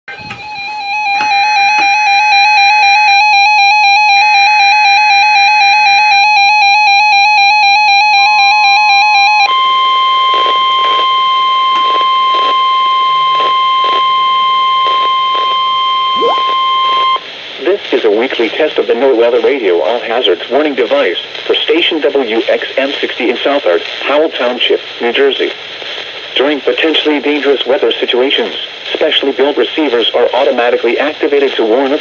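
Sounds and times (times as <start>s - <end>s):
steady alarm tone: 0.1s - 17.3s
faint static crackle: 9.4s - 32.0s
screeching data bursts: 10.2s - 17.2s
loud warbling alert tone: 14.8s - 17.2s.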